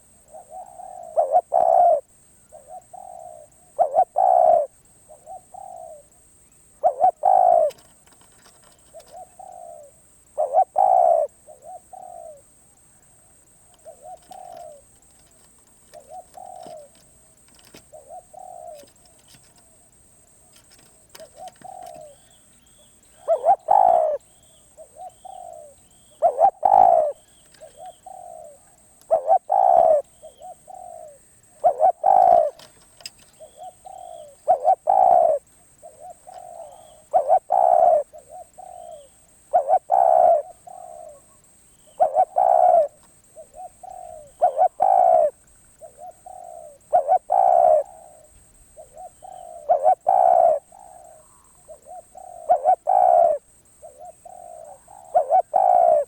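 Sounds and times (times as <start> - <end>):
dove cooing: 0.0 - 6.2, 6.8 - 56.0.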